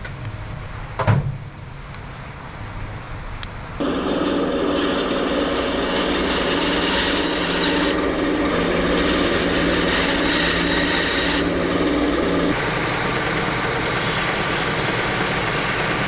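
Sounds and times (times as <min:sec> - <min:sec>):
rasping grind on wood: 0:03.8 - 0:11.9
motor hum: 0:03.8 - 0:16.0.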